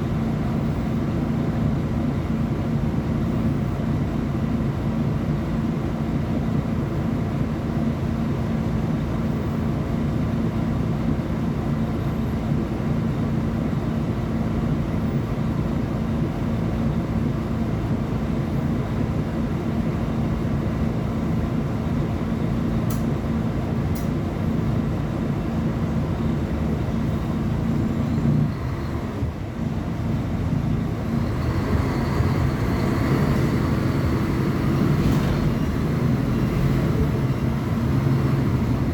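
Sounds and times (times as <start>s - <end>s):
bus diesel engine running: 0.0s - 38.9s.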